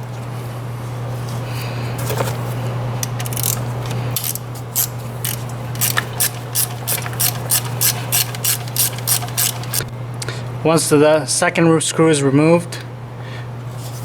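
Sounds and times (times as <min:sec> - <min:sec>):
ratchet clicking: 0:03.0 - 0:09.9.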